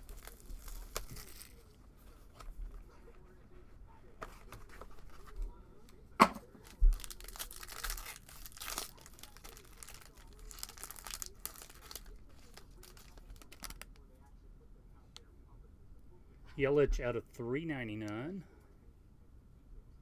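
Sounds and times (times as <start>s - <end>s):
plastic packaging crinkling and tearing: 0.0s - 3.1s, 4.3s - 14.0s.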